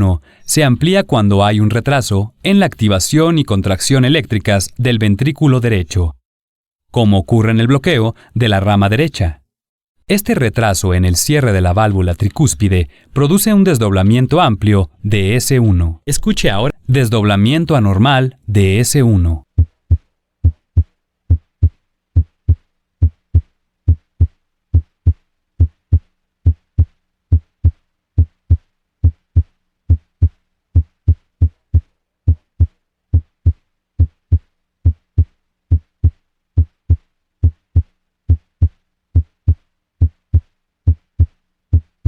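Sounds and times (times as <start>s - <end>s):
heartbeat thuds: 19.4s - 42.0s.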